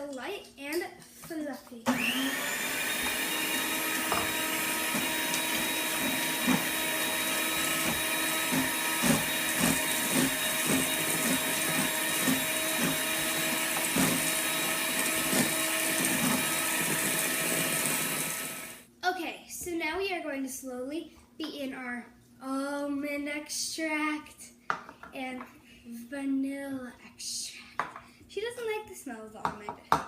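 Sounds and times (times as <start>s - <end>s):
electric mixer running: 1.9s - 18.8s
mixer knocking: 1.9s - 18.8s.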